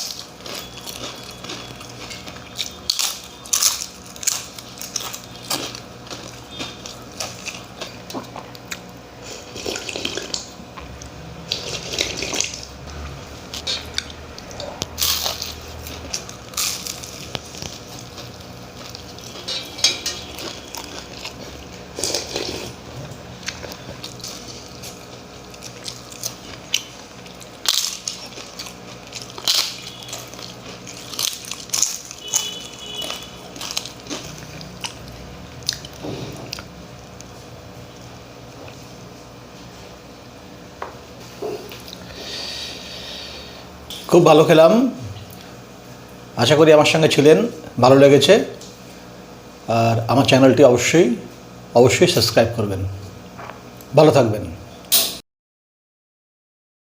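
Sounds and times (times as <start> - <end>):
chewing and wet mouth noises: 0.0 - 37.3.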